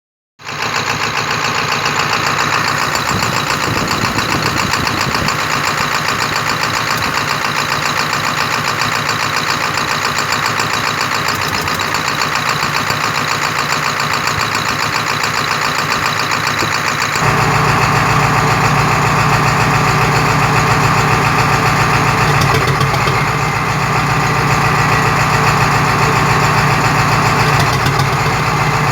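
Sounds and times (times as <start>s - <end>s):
engine running steadily: 0.5s - 28.9s
low hum: 17.2s - 28.8s.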